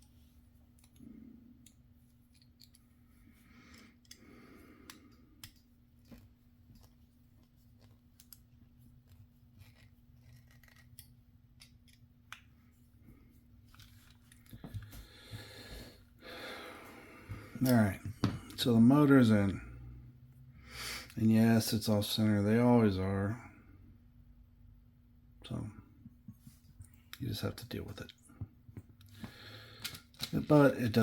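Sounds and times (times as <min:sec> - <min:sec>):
steady low hum: 0:00.0 - 0:31.0
small metal parts clicking and scraping: 0:01.6 - 0:02.9, 0:09.6 - 0:12.0.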